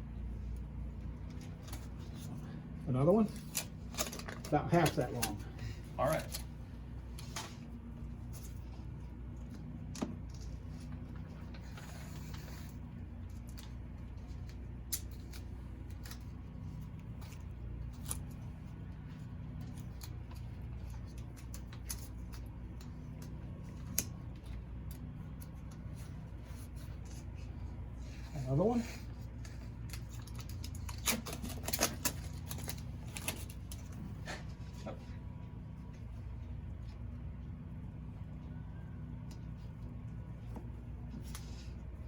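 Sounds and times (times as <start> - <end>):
low hum: 0.0 - 42.0
tape tearing: 29.1 - 34.0.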